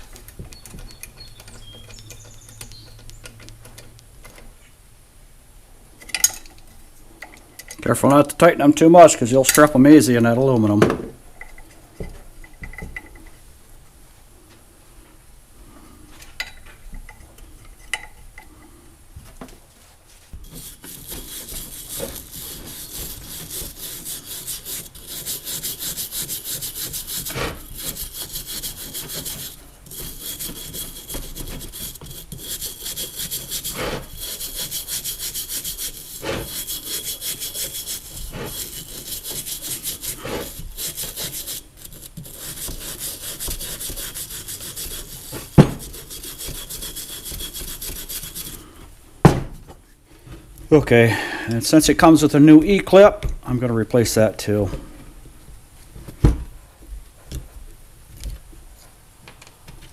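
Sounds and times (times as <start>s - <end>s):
rhythmic hand scraping: 20.1s - 48.8s.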